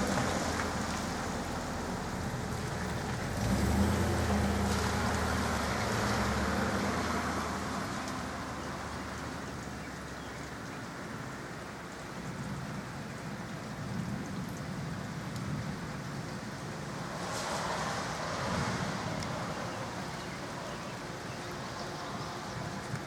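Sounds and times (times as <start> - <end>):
steady rain: 0.0 - 23.0
low thunder rumble: 12.4 - 20.6.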